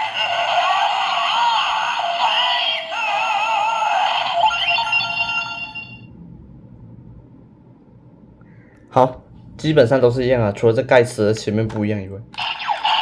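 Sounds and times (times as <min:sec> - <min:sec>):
electronic toy music: 0:00.0 - 0:06.0, 0:12.4 - 0:13.0.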